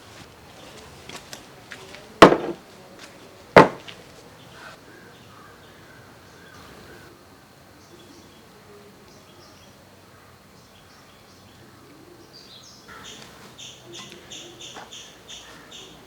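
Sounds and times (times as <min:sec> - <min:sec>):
heavy sharp knocks: 0:02.2 - 0:02.6, 0:03.6 - 0:03.9.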